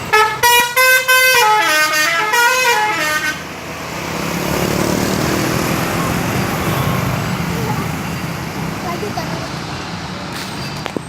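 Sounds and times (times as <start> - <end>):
multi-tone musical bus horn: 0.0 - 3.6
bus engine: 0.0 - 11.0
road noise: 0.0 - 11.0.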